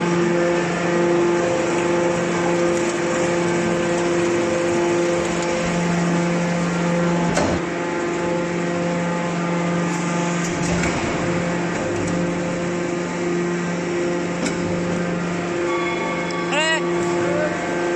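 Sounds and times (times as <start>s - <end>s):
hydraulic machine humming: 0.0s - 17.9s.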